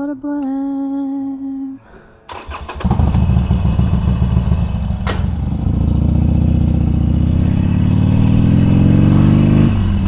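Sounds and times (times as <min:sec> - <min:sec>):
motorcycle engine running: 0:02.3 - 0:10.0
sharp clack: 0:05.0 - 0:05.4.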